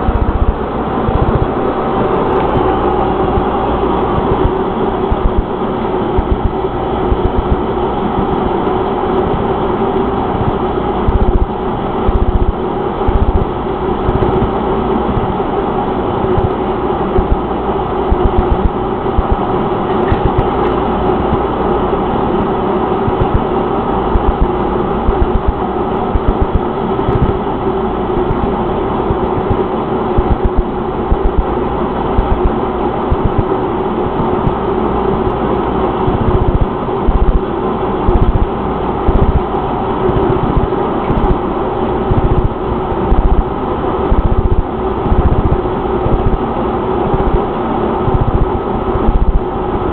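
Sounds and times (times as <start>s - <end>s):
low thumps: 0.0s - 3.6s.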